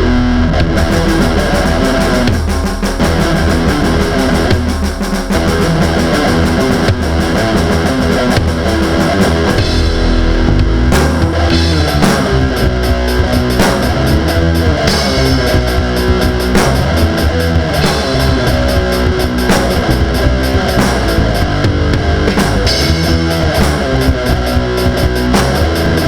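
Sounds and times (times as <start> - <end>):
distorted electric guitar: 0.0 - 26.0
driving drum beat: 0.0 - 26.0.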